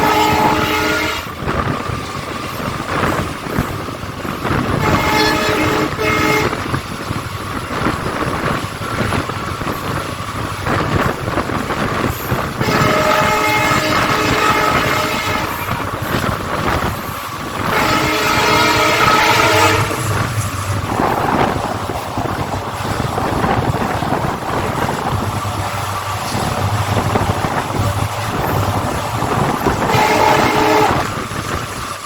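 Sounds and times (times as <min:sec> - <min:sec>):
locomotive air horn blast: 0:00.0 - 0:01.4, 0:04.8 - 0:06.6, 0:12.6 - 0:15.8, 0:17.6 - 0:20.3, 0:29.7 - 0:31.2
train wheels rumbling: 0:00.0 - 0:32.0.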